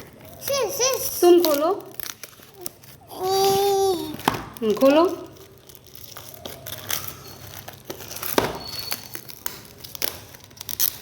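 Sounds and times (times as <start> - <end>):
packaging crinkling and rustling: 0.0 - 11.0
packaging snap: 1.4 - 2.8.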